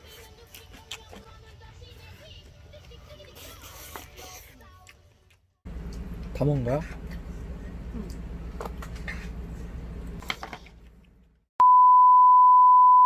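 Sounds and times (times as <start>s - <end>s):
loud beep tone: 11.6s - 13.0s.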